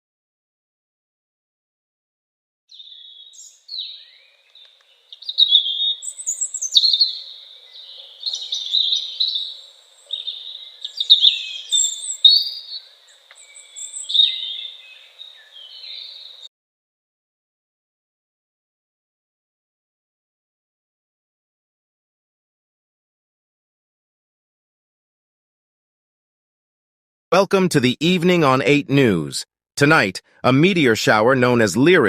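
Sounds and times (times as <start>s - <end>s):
songbirds singing: 2.7s - 16.5s.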